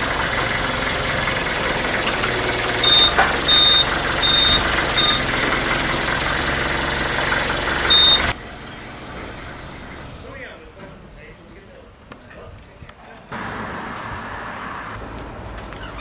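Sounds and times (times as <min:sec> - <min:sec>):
heavy machinery running: 0:00.0 - 0:10.4
high-pitched warning beeps: 0:02.8 - 0:05.2, 0:07.9 - 0:08.4.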